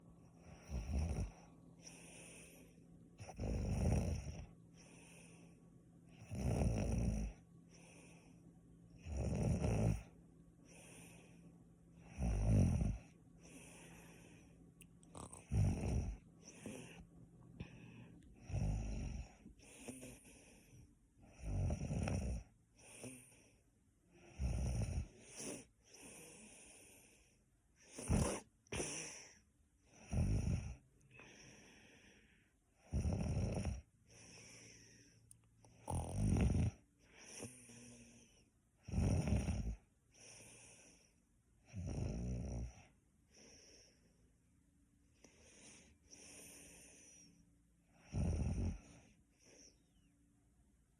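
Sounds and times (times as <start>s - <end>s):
soft breathing: 0.0s - 3.4s, 4.4s - 6.2s, 7.3s - 9.0s, 10.0s - 12.1s, 12.9s - 18.4s, 19.1s - 21.3s, 25.0s - 30.0s, 30.7s - 32.8s, 34.0s - 36.0s, 36.7s - 38.6s, 40.1s - 41.4s, 42.8s - 48.0s, 48.7s - 50.3s
person snoring: 0.4s - 5.4s, 6.2s - 8.3s, 9.0s - 10.1s, 12.0s - 14.4s, 15.0s - 17.0s, 17.6s - 20.7s, 21.3s - 23.4s, 24.2s - 27.2s, 27.9s - 31.6s, 32.8s - 35.1s, 35.8s - 41.0s, 41.7s - 42.9s, 48.0s - 49.2s.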